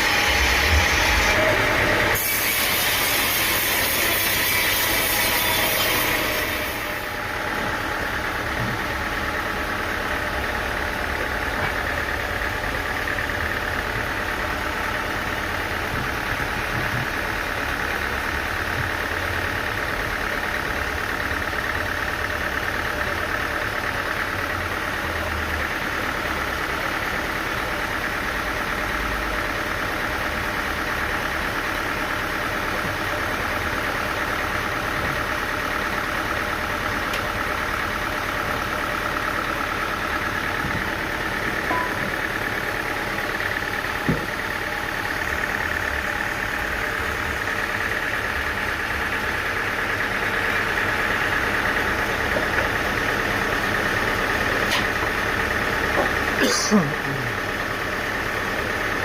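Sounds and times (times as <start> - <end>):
sawmill machinery engine drone: 0.0 - 59.0.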